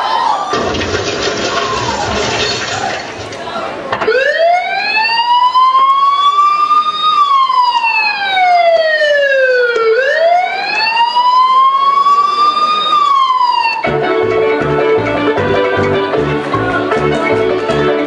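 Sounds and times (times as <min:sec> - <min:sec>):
siren wailing: 0:04.0 - 0:13.9.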